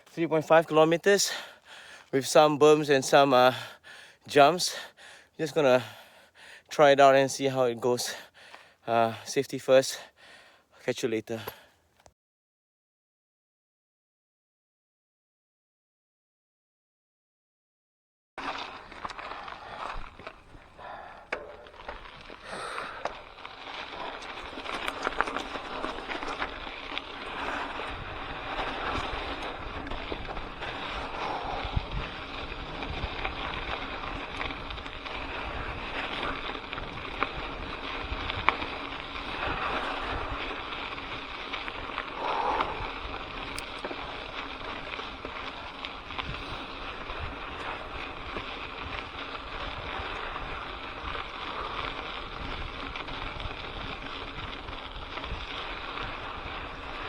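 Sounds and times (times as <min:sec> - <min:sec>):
bike clicks and rattles: 0:18.4 - 0:57.0
wind rushing over microphone: 0:27.2 - 0:44.3.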